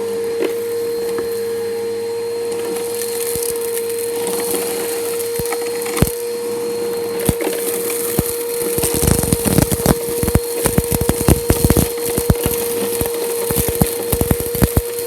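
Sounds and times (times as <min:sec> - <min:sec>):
vacuum motor whine: 0:00.0 - 0:15.0
grit crackling and rattling: 0:07.2 - 0:15.0.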